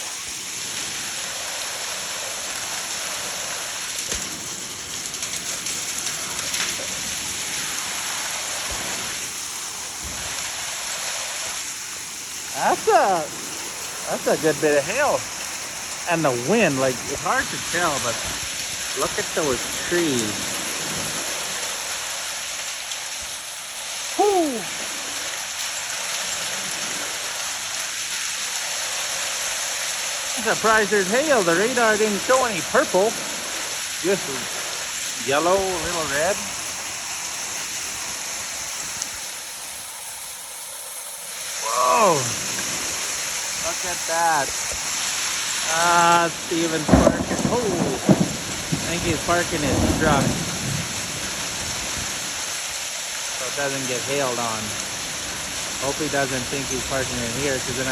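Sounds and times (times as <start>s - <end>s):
heavy rain hissing: 0.0s - 57.9s
hailstones ticking: 0.1s - 57.9s
man exclaiming whew: 24.2s - 24.8s, 41.6s - 42.4s.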